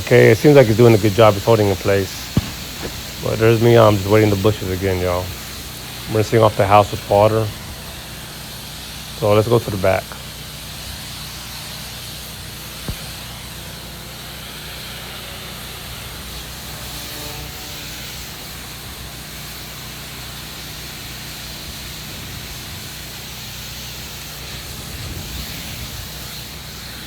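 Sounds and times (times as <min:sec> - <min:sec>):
pressure washer motor hum: 0:00.0 - 0:27.0
water spray hissing: 0:00.0 - 0:27.0
sharp click: 0:02.2 - 0:03.1.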